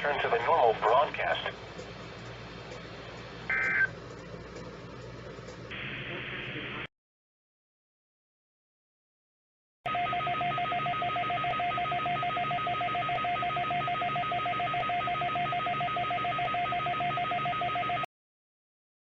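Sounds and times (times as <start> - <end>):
electronic alarm trill: 3.5 - 4.0, 9.9 - 18.1.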